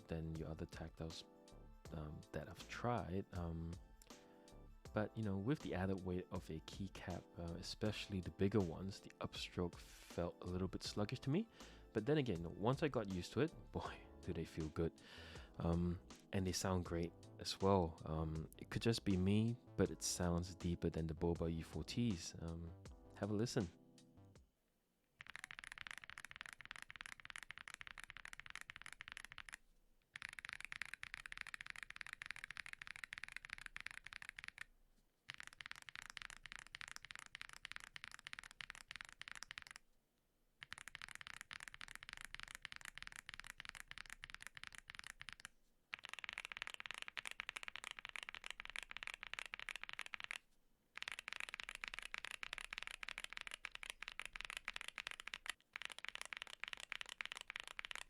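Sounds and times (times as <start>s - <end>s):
fast mechanical keyboard typing: 25.2s - 29.6s, 30.2s - 34.7s, 35.3s - 39.8s, 40.6s - 50.4s, 51.0s - 58.0s.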